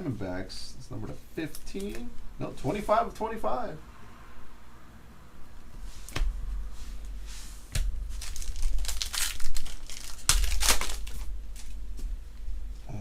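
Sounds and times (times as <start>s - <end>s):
wrapper crinkling and tearing: 8.1s - 11.8s.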